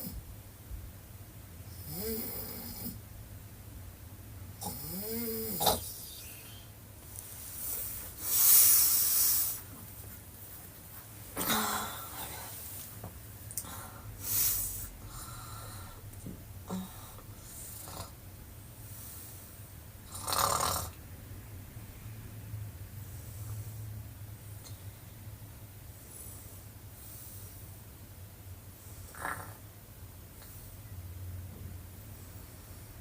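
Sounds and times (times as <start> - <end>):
woman snoring: 1.7 - 3.0, 4.6 - 6.6, 16.6 - 18.2, 20.1 - 21.0, 29.1 - 29.6.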